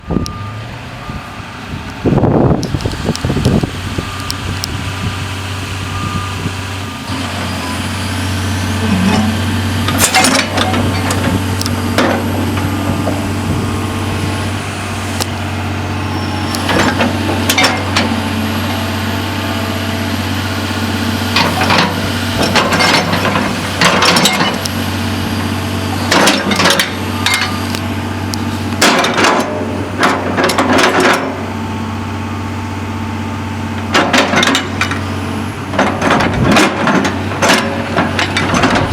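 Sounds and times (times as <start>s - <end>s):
excavator diesel engine running: 0.0s - 38.9s
metallic clanks and knocks: 8.9s - 11.4s, 12.0s - 13.2s, 16.6s - 18.1s, 28.8s - 31.4s, 33.9s - 35.0s, 35.7s - 38.9s.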